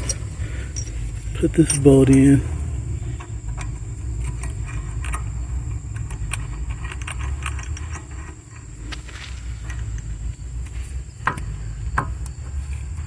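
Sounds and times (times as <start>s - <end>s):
metallic clicks and clinks: 0.0s - 2.4s
low rumble: 0.0s - 13.0s.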